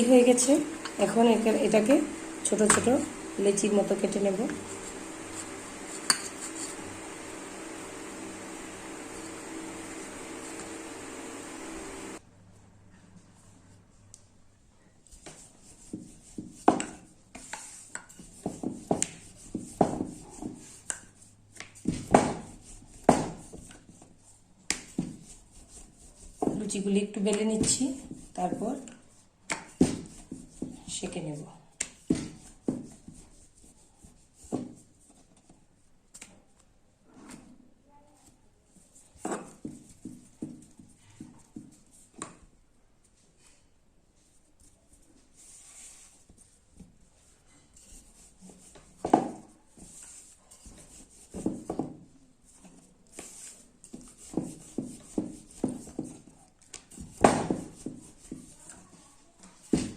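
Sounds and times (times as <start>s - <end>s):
utensils tapping on work surface: 5.3s - 6.8s.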